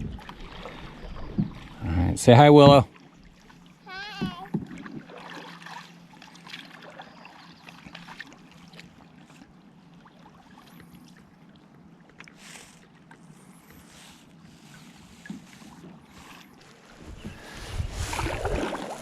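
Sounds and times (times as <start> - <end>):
kayak paddle dipping in water: 0.0 - 19.0
water whoosh: 16.1 - 19.0.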